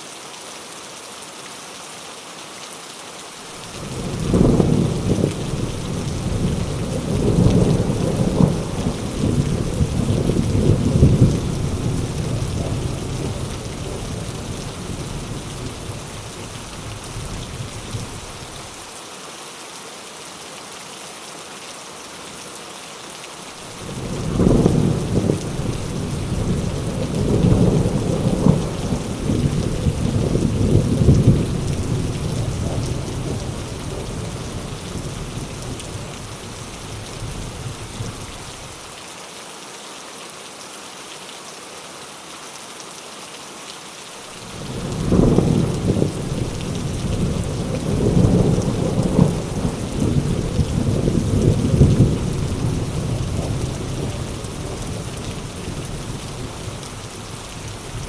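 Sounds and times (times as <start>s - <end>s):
heavy rain: 0.0s - 58.0s
rolling thunder: 3.8s - 18.3s, 23.8s - 38.5s, 44.5s - 57.0s.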